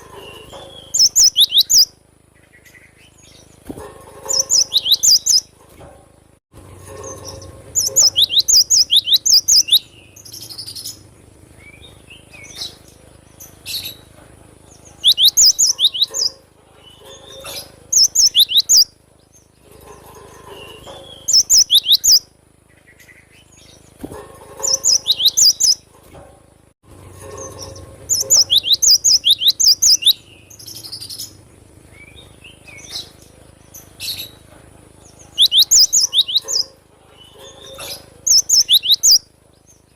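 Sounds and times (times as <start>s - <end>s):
soft bird chirps: 0.0s - 5.6s, 6.8s - 26.0s, 27.2s - 39.9s
bird whistling song: 0.2s - 1.9s, 4.3s - 5.5s, 7.7s - 11.0s, 15.0s - 19.0s, 20.6s - 22.3s, 24.7s - 25.8s, 28.1s - 31.3s, 35.3s - 39.3s.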